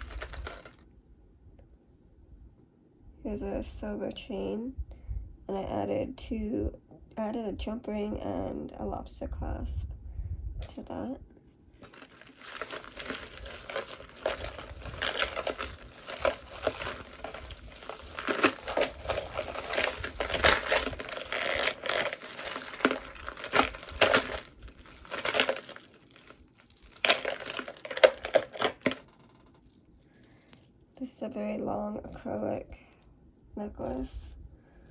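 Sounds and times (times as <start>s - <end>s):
plastic crinkling and rustling: 0.0s - 0.8s, 11.8s - 31.0s, 33.8s - 34.9s
jewelry clicking: 11.8s - 31.5s.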